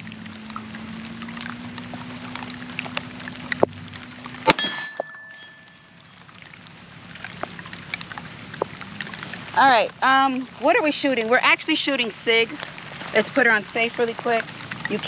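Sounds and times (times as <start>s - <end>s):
rain falling: 0.0s - 15.0s
metallic clang: 4.5s - 5.9s.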